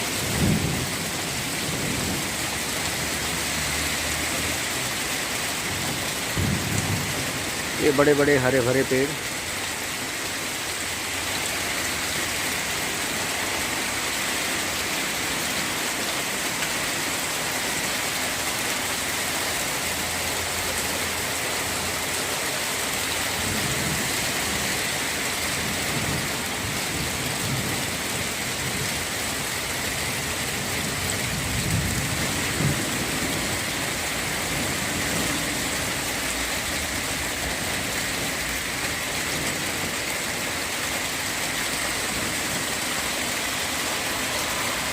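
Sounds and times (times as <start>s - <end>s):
steady rain: 0.0s - 44.9s.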